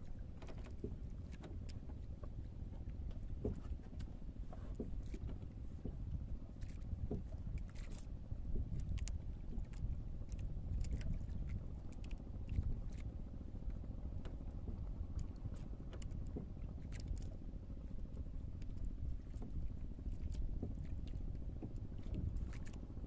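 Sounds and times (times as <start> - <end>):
water sloshing against boat hull: 0.0 - 23.0
wind rumbling on microphone: 0.0 - 23.0
light clicks and knocks: 0.4 - 6.0.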